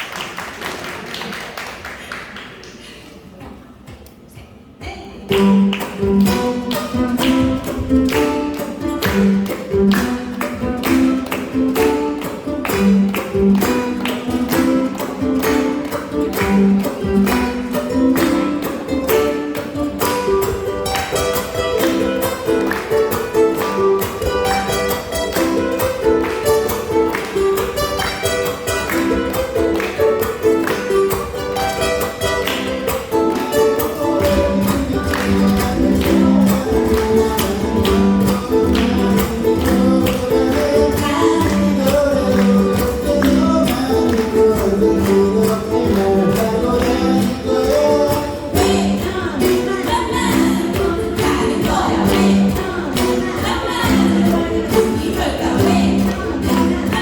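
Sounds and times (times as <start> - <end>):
ukuleles strummed: 5.2 - 57.0
voices singing: 34.0 - 57.0.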